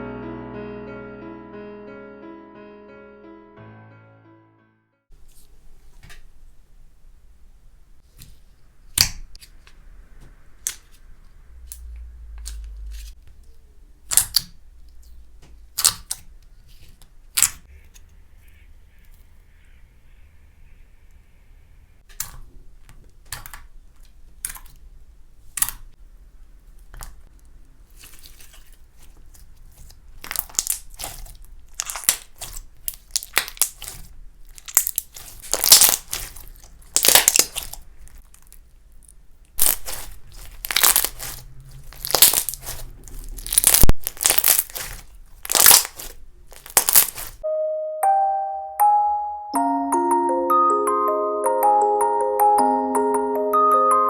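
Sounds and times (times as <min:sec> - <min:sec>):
slime popping and crackling: 0:14.0 - 0:14.6, 0:15.7 - 0:17.7, 0:25.5 - 0:25.9, 0:27.9 - 0:47.4.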